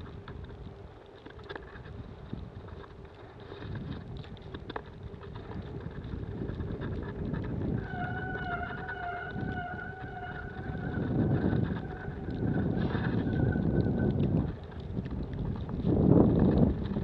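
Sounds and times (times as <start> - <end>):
wind buffeting microphone: 0.0 - 17.0
high whistling tone: 7.8 - 14.6.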